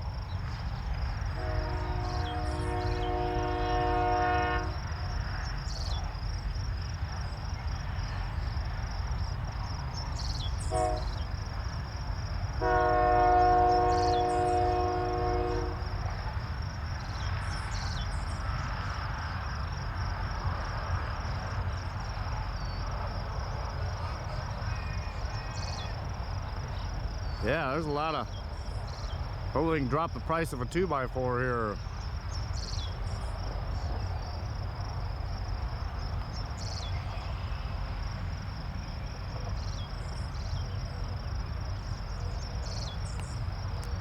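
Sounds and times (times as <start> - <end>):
insects buzzing: 0.0 - 44.0
locomotive horn blasts: 1.4 - 5.1, 10.7 - 11.3, 12.6 - 16.1.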